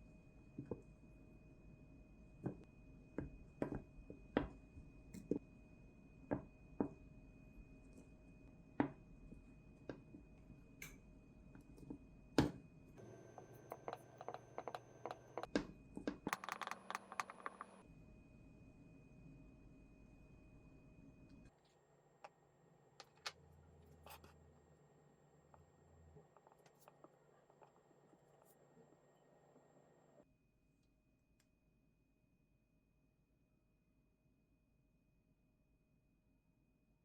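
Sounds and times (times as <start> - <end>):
kitchen utensils tapping and knocking: 13.0 - 17.8.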